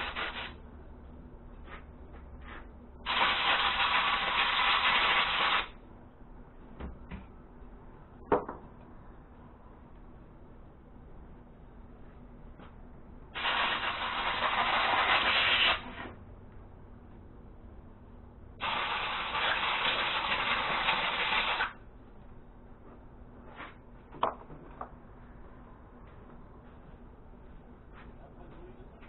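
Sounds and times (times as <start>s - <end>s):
hissing spray blasts: 0.0s - 0.6s, 3.0s - 5.8s, 13.3s - 16.0s, 18.6s - 21.8s.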